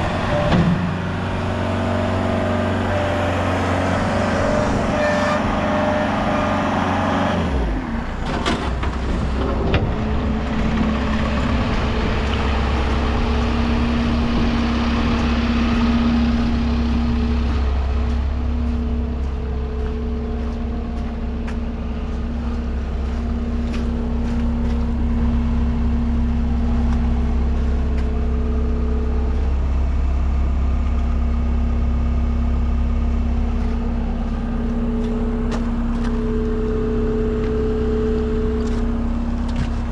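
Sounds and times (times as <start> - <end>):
diesel engine running: 0.0 - 39.9
steady whine: 9.8 - 39.9.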